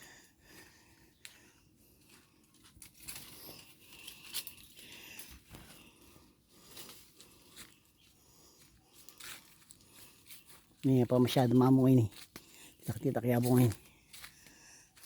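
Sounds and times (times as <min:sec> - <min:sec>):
rustling and crunching: 0:02.1 - 0:06.0.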